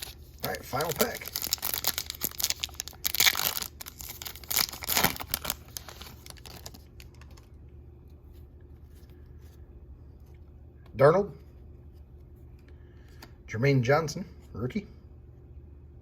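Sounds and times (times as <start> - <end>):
foil wrapper tearing and crinkling: 0.0 - 7.5.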